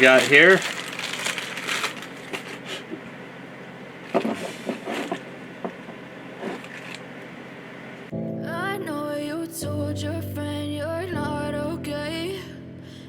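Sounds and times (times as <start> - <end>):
steady low hiss: 0.0 - 8.1.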